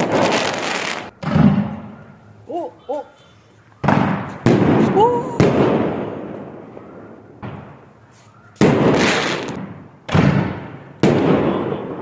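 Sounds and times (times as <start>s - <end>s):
fireworks bangs with echoing rumble: 0.0s - 2.0s, 3.8s - 7.9s, 8.6s - 12.0s.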